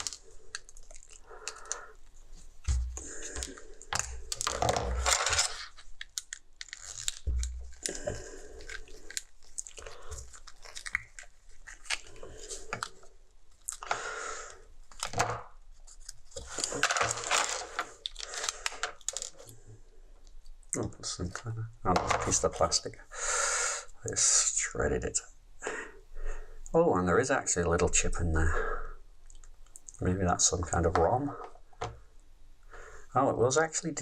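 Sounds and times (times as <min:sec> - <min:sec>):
dull thumps: 0:02.6 - 0:03.4.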